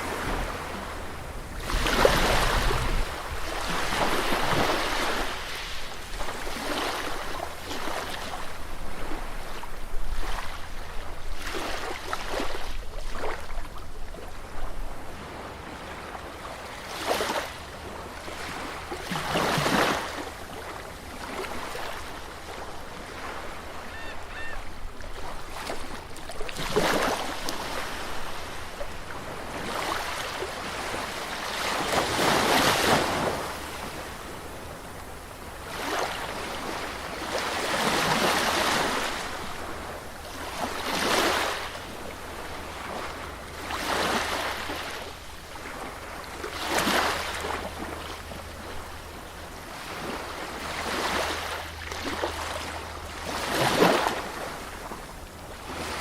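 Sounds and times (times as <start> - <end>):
sea waves washing onto beach: 0.0 - 56.0.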